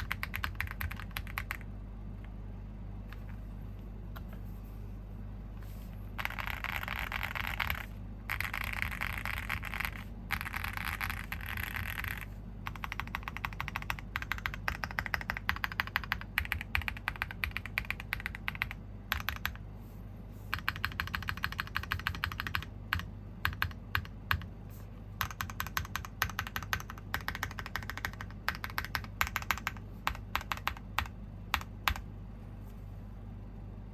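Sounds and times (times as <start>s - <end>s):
mechanical keyboard typing: 0.0s - 1.7s, 6.2s - 19.6s, 20.5s - 24.5s, 25.2s - 32.1s.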